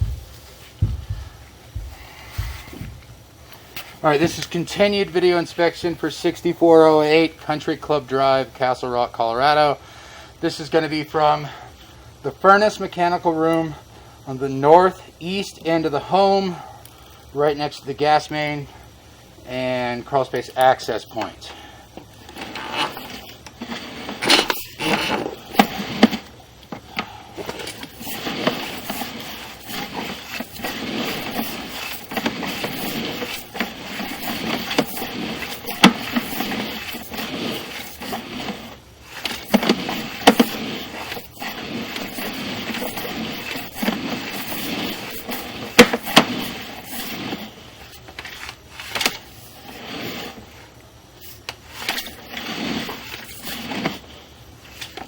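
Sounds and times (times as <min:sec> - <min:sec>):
camera cable scraping in pipe: 0:22.0 - 0:55.0.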